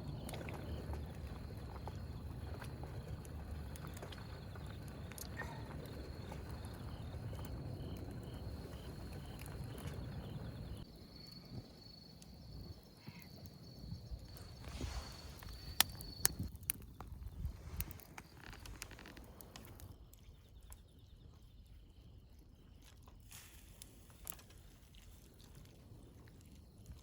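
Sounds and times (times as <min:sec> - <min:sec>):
insects chirping: 0:00.0 - 0:27.0.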